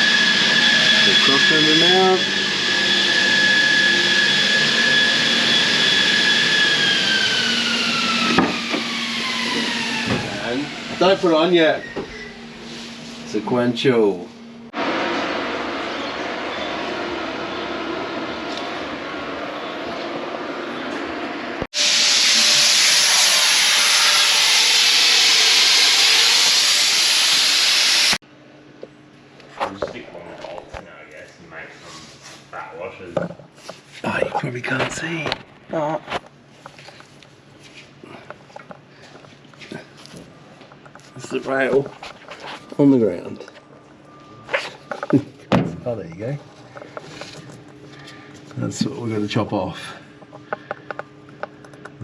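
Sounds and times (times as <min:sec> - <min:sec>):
small motor whine: 0:00.0 - 0:28.2
hiss: 0:21.8 - 0:28.2.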